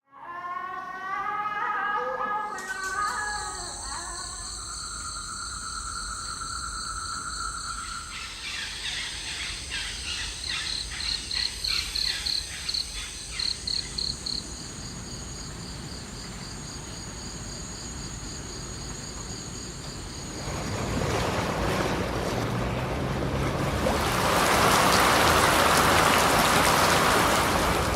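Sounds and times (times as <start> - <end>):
insects chirring: 2.6 - 20.7
rushing water: 18.5 - 27.9.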